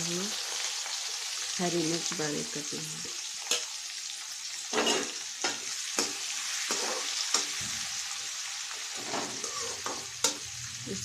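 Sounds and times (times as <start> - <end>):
onion sizzling in hot oil: 0.0 - 11.0
utensil scraping a pan: 4.7 - 8.0, 8.8 - 10.5.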